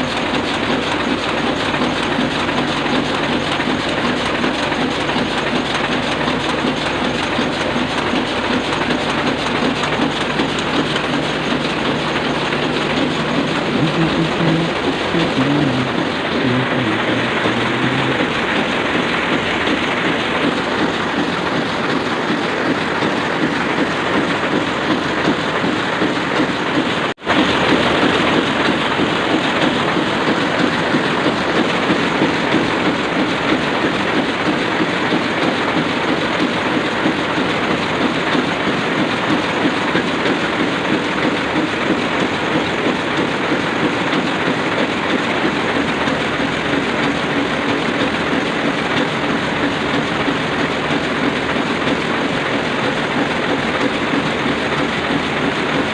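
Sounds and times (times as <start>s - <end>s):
printing press clatter: 0.0s - 55.9s.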